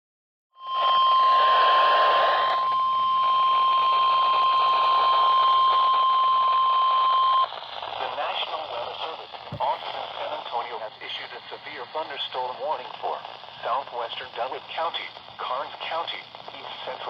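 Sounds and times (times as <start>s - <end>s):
radio static: 3.6s - 17.0s.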